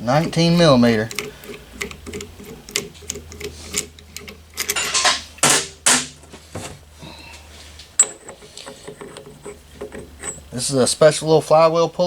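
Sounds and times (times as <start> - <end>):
metal tools clinking: 0.1 - 6.2, 8.0 - 10.9
loud metal clanks: 4.6 - 6.2.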